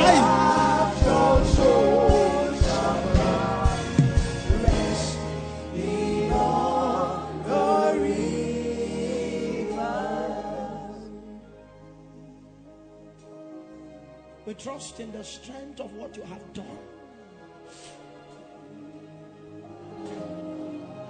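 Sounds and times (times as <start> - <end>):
drum hits: 0.0 - 5.1
voices singing gospel: 0.0 - 12.4.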